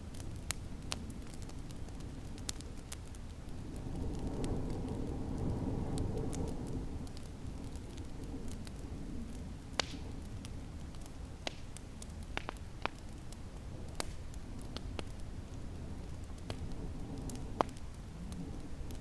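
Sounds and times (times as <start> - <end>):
sharp pops of fire: 0.0 - 19.0
wood fire crackling: 0.0 - 19.0.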